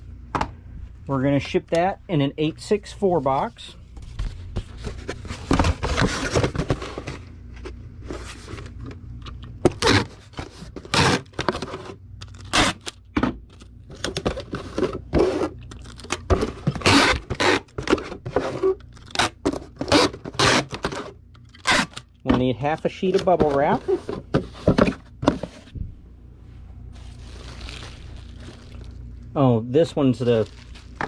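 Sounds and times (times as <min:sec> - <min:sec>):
cardboard box scraping and rustling: 0:04.2 - 0:08.9.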